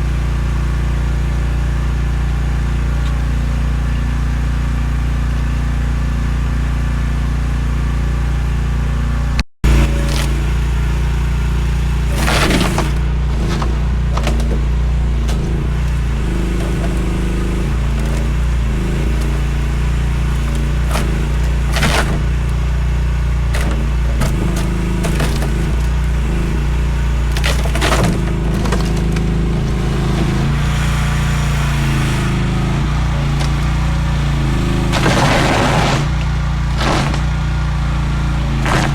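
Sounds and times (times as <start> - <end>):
excavator engine running: 0.0 - 38.9
scraping knocks: 9.6 - 38.9.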